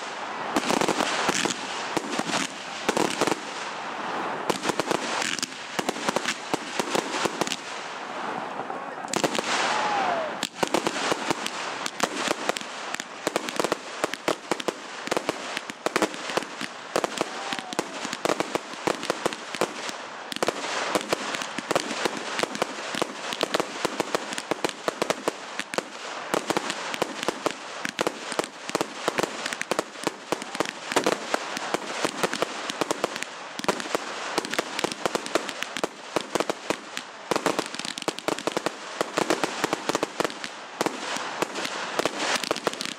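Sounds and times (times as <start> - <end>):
fireworks bangs and crackling: 0.0 - 8.4, 9.0 - 42.9.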